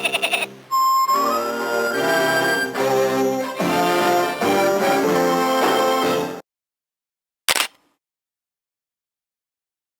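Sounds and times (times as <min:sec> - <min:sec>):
cartoon soundtrack music: 0:00.0 - 0:06.4.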